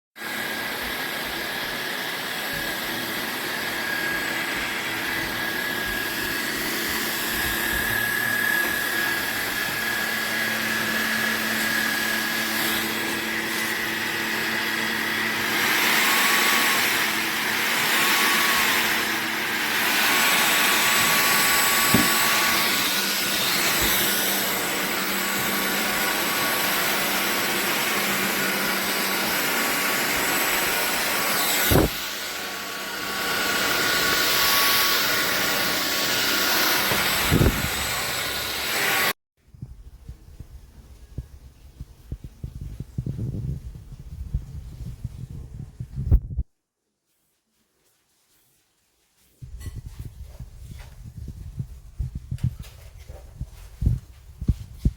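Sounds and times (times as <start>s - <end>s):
vacuum cleaner running with whine: 0.2s - 39.2s
knock: 21.9s - 22.2s.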